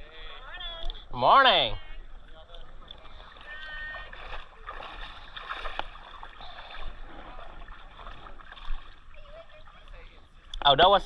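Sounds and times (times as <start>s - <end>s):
water splashing around a canoe: 2.1s - 10.8s.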